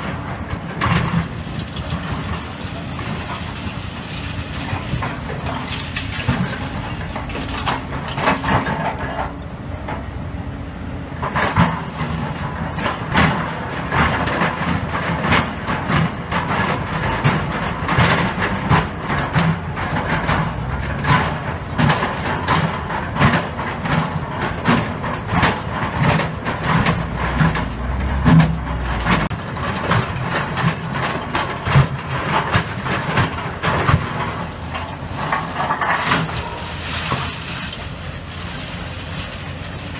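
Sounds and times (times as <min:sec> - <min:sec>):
excavator engine running: 0:00.0 - 0:39.9
rubble and metal clatter: 0:00.0 - 0:39.9
bucket scraping concrete: 0:33.0 - 0:39.9.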